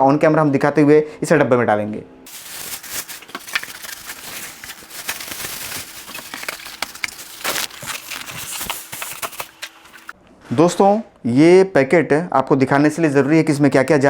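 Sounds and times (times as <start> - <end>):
packing material rustling: 2.3 - 10.2.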